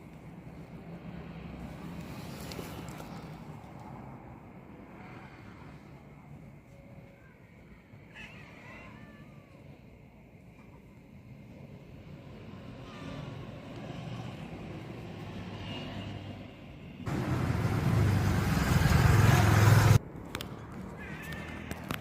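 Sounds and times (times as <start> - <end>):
vehicle engine running: 17.1 - 20.0.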